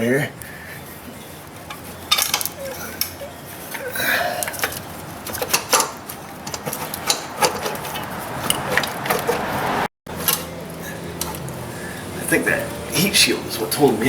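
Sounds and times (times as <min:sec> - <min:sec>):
metal clicks clunks and scraping: 0:01.6 - 0:11.6.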